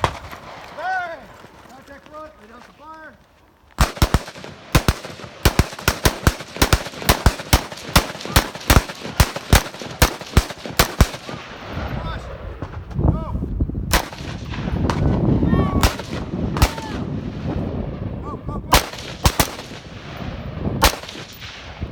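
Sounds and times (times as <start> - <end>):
rifle shots: 0.0 - 0.8, 3.8 - 11.9, 13.9 - 15.2, 15.8 - 17.5, 18.7 - 21.9.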